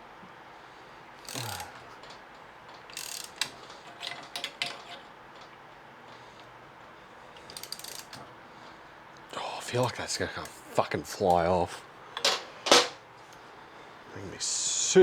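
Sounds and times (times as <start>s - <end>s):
metallic clicks and scrapes: 2.8s - 5.5s, 7.4s - 8.2s.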